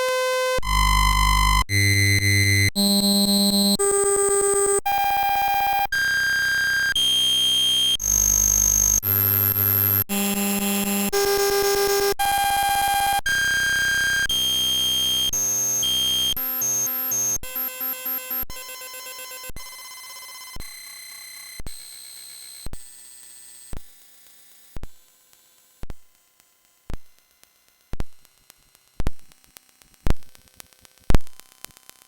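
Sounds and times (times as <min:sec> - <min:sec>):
harsh buzzy electronic tone: 0:00.0 - 0:21.3.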